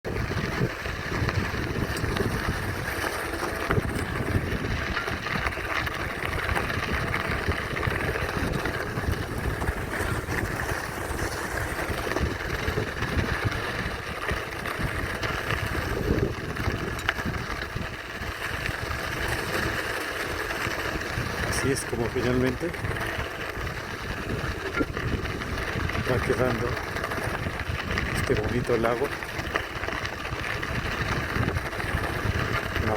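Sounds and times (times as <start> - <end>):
wind buffeting microphone: 0.0 - 32.9.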